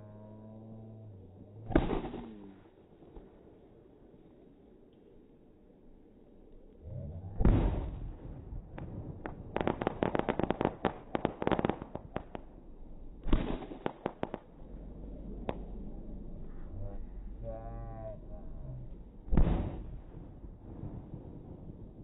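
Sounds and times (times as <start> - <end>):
crackling firework bangs: 1.7 - 2.6, 7.4 - 12.6, 13.2 - 14.6, 19.3 - 22.0
deep firework booms: 1.7 - 2.6, 7.2 - 16.3, 18.8 - 22.0.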